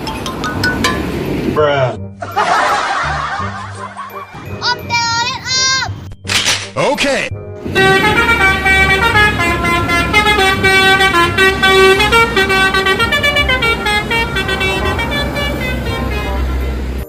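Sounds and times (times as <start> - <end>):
multi-tone bus air horn melody: 7.6 - 17.0.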